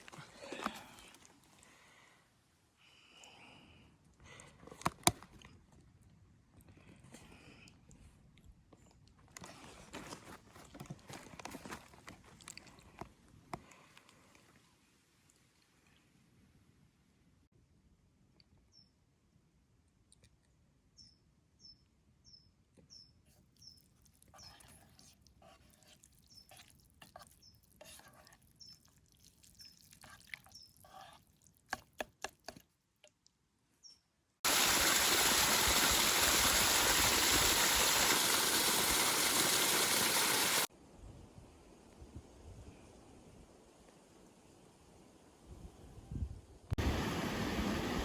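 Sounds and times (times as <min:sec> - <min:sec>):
clicks and rustles: 0:08.8 - 0:13.8
small bird chirping: 0:18.6 - 0:19.0, 0:20.9 - 0:24.6, 0:26.2 - 0:26.6, 0:28.5 - 0:30.8, 0:33.8 - 0:34.1
rush of flowing water: 0:34.5 - 0:40.7, 0:46.8 - 0:48.0.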